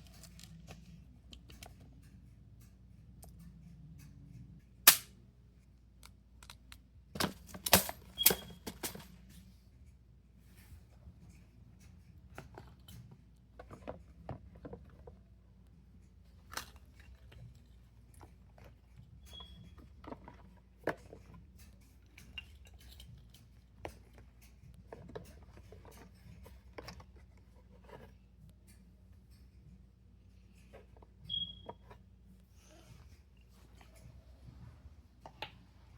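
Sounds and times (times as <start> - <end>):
high squeak: 31.3 - 31.8.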